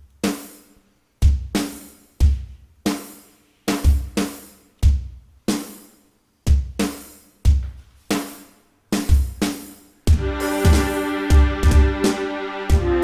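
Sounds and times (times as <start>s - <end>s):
snare drum hits: 9.0s - 13.0s.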